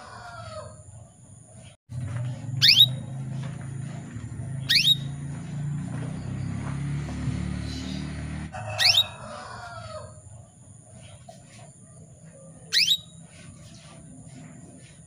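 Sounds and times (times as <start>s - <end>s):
canary call notes: 2.5s - 3.1s, 4.5s - 5.3s, 7.7s - 9.4s, 12.7s - 13.3s.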